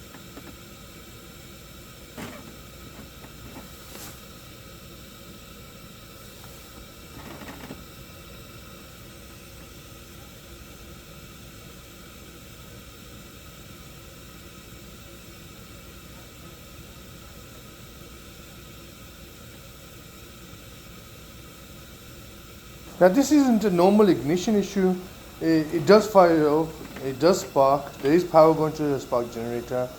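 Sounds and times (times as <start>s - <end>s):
steady hiss: 0.0s - 29.9s
faint steady tones: 21.5s - 29.9s.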